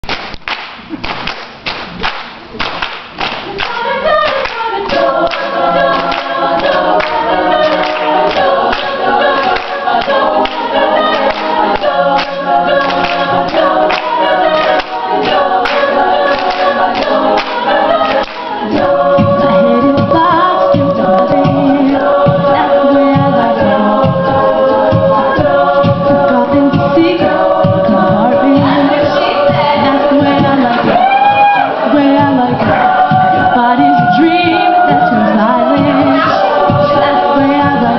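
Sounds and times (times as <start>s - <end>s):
quick rhythmic vocal clicks: 0.1s - 31.0s
vocal group singing a cappella: 3.4s - 37.9s
pulsing vocal bass: 11.8s - 37.9s.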